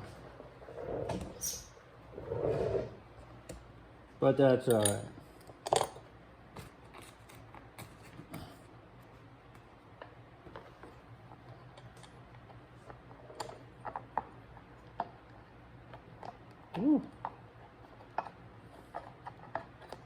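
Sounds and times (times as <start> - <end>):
small bolts clicking and tapping: 4.6 - 6.0.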